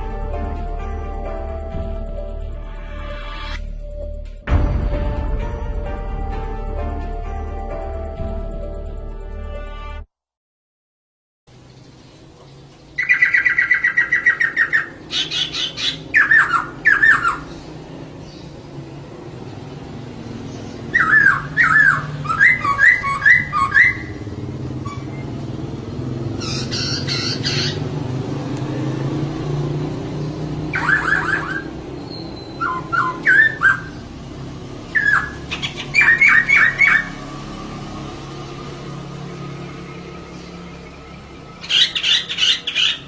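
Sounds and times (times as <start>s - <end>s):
bird calling: 13.0s - 17.8s, 20.4s - 25.4s, 26.3s - 27.9s, 30.7s - 34.1s, 34.9s - 37.2s, 41.6s - 43.0s.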